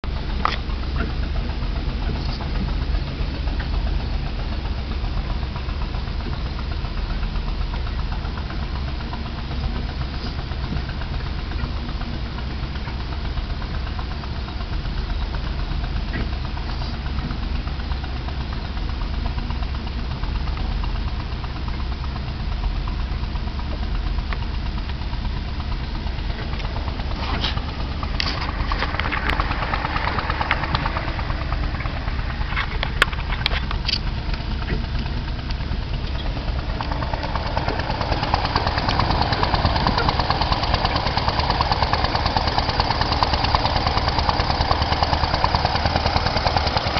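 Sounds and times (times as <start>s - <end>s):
diesel truck engine running: 0.0s - 46.9s
engine rod knock: 26.1s - 46.9s.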